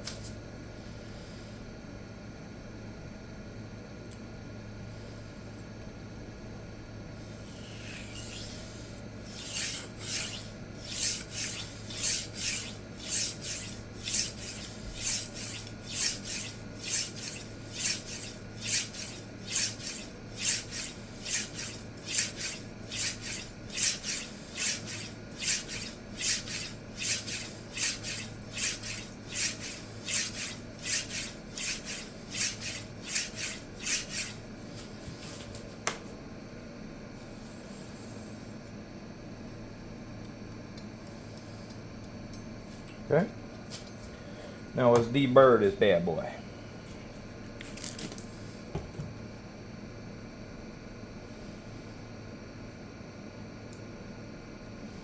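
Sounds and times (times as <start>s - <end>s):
knife scraping on sharpening stone: 7.8s - 34.4s.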